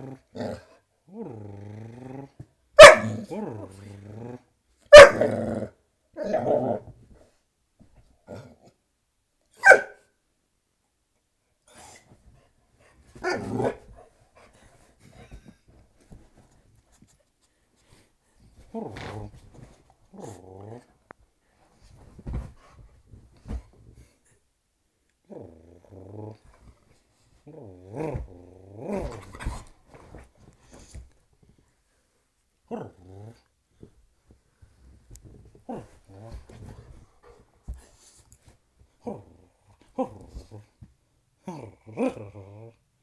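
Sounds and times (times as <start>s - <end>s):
dog growling: 0.0s - 2.4s, 3.0s - 4.5s, 20.1s - 20.9s, 27.4s - 29.5s
dog barking and growling: 0.0s - 6.9s, 9.6s - 10.1s, 13.1s - 14.1s, 27.4s - 29.7s, 32.6s - 33.5s, 41.4s - 42.8s.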